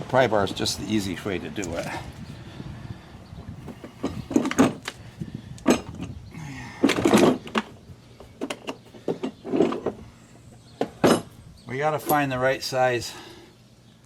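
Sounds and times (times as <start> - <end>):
tools clicking and clanking: 1.6 - 2.0, 3.7 - 5.0, 6.8 - 10.0
tools rattling: 3.7 - 5.0, 5.6 - 6.2, 6.8 - 10.0, 10.8 - 11.4.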